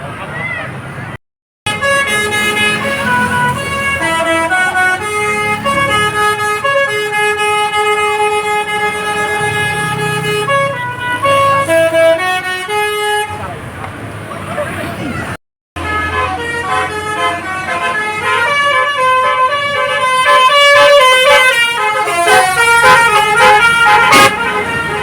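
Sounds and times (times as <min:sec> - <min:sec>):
multi-tone bus horn playing a tune: 0:01.7 - 0:13.6, 0:15.8 - 0:25.0
low vehicle rumble: 0:13.4 - 0:25.0.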